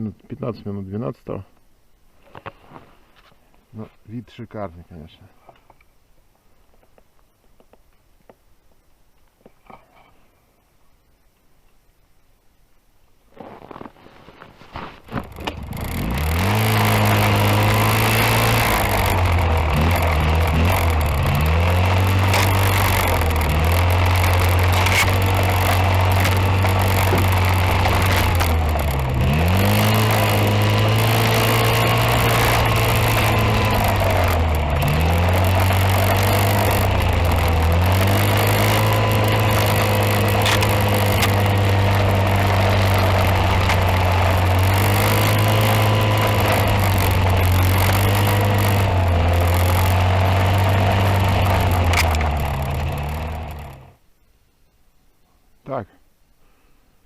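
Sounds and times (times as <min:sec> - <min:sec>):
engine running: 0:14.9 - 0:54.0.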